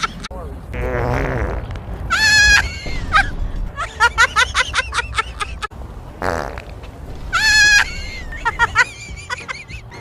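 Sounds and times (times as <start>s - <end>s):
short low buzzing fart: 0.8s - 1.8s, 6.2s - 6.7s.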